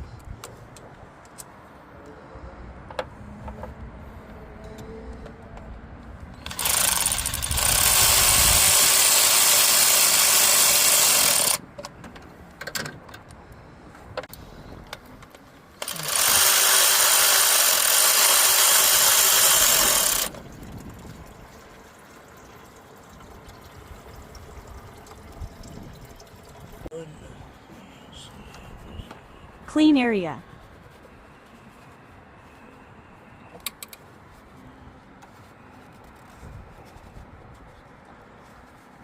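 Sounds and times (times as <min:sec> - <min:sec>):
power tool hissing: 0:06.4 - 0:11.6, 0:15.8 - 0:20.3.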